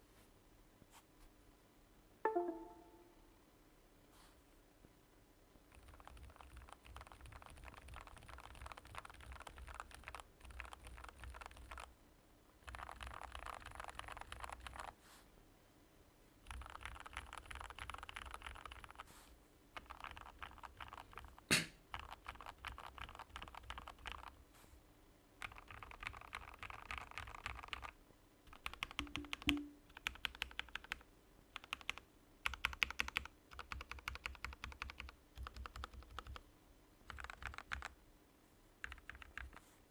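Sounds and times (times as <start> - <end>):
typing on mechanical keyboard: 5.7 - 11.9, 12.6 - 14.9, 16.4 - 19.1, 19.8 - 24.4, 25.4 - 31.0, 31.6 - 36.4, 37.1 - 38.0, 38.8 - 39.6.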